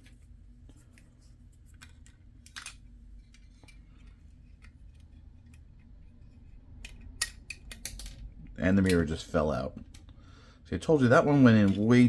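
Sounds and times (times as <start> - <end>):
low steady hum: 0.0 - 12.0
plastic parts clicking and tapping: 1.7 - 5.9, 6.8 - 9.1.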